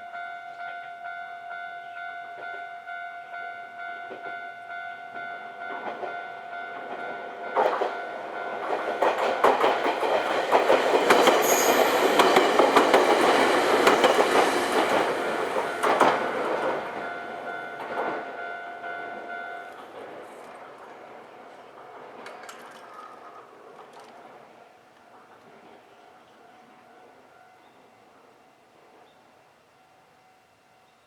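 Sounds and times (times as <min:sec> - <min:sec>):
crossing warning bell ringing: 0:00.0 - 0:22.8
train wheels clacking over rail joints: 0:06.8 - 0:17.0, 0:19.7 - 0:24.4.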